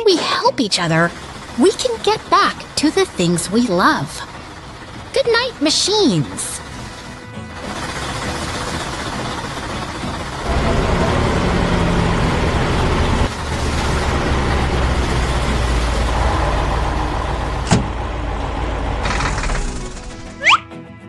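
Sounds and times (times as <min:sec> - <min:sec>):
heavy vehicle engine running: 0:00.0 - 0:20.4.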